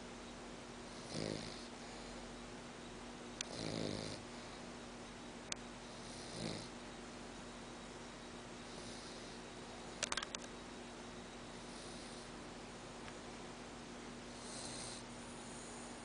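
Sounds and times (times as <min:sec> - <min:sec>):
dog snoring: 0:00.9 - 0:02.2, 0:03.4 - 0:04.6, 0:05.9 - 0:06.8, 0:08.6 - 0:10.2, 0:11.5 - 0:12.4, 0:14.3 - 0:16.0.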